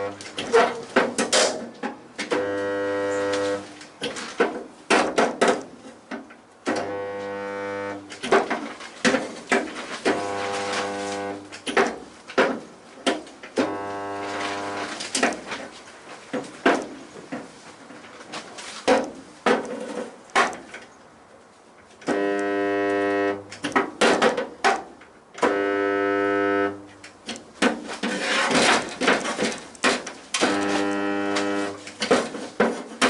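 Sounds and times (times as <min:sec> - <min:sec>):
electrical welding hum: 0:00.0 - 0:00.6, 0:02.3 - 0:03.9, 0:06.6 - 0:08.3, 0:10.0 - 0:11.8, 0:13.6 - 0:15.7, 0:22.0 - 0:23.8, 0:25.4 - 0:27.6, 0:28.2 - 0:32.1
welding crackling: 0:10.0 - 0:11.7, 0:13.6 - 0:15.7, 0:25.4 - 0:32.2.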